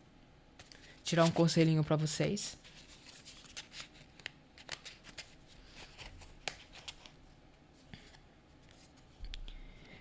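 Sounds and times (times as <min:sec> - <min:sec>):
cards being shuffled: 0:02.6 - 0:07.2.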